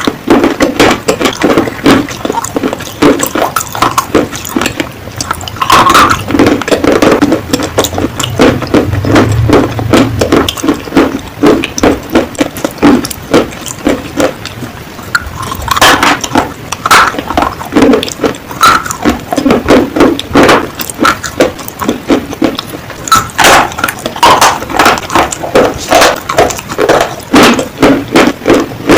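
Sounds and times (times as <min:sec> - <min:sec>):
crunching and chewing clay: 0:00.0 - 0:28.9.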